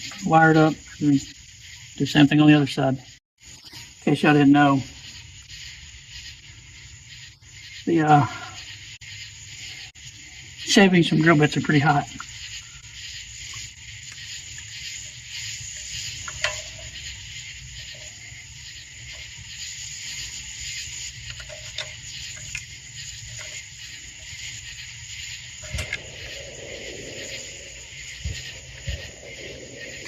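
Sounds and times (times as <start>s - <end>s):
insects trilling: 0.0s - 30.0s
low background rumble: 22.0s - 30.0s.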